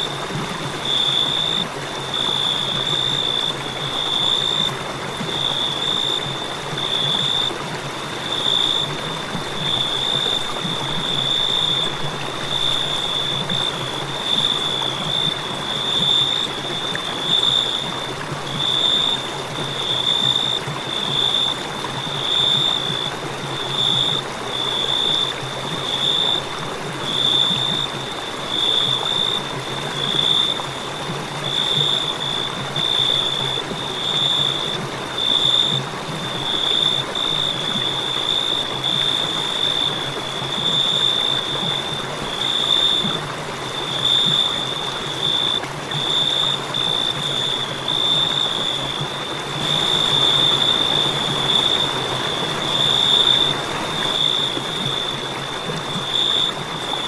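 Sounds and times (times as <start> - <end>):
crickets chirping: 0.0 - 57.0.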